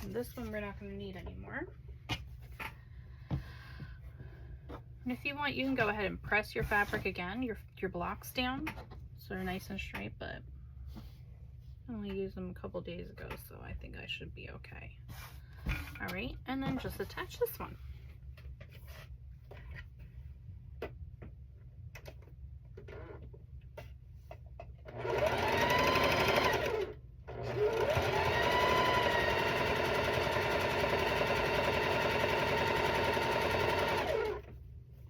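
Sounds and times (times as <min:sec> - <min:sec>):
sewing machine motor whine: 0:24.9 - 0:34.5.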